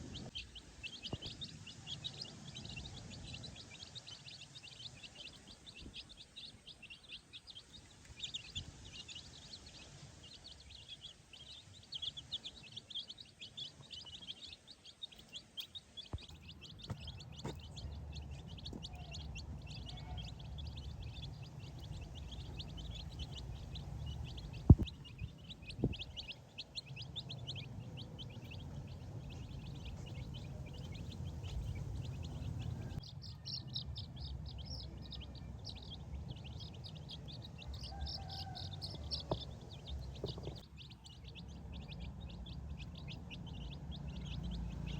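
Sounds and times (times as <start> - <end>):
baby chicks peeping: 0.0 - 44.9
low rumble: 16.2 - 44.9.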